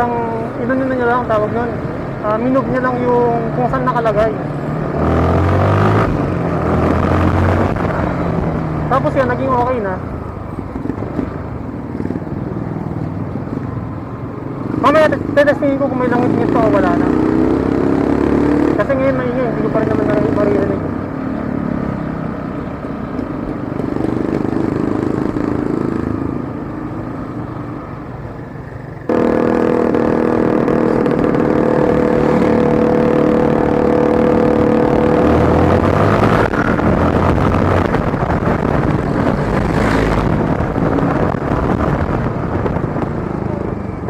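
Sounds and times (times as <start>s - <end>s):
motorcycle engine running: 23.2s - 27.4s, 28.4s - 44.0s.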